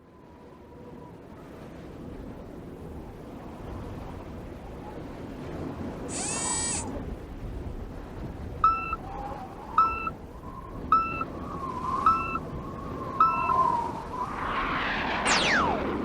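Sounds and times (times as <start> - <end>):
short electronic beeps: 8.6 - 9.0, 9.8 - 10.1, 10.9 - 11.3, 12.0 - 12.4, 13.2 - 13.6
low rumble: 14.1 - 16.0.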